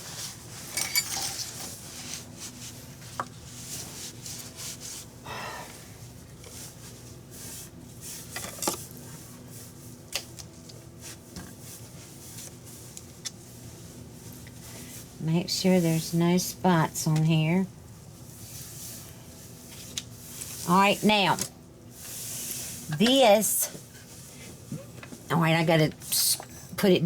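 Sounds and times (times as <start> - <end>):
rubbing and handling noises: 0.0 - 5.2.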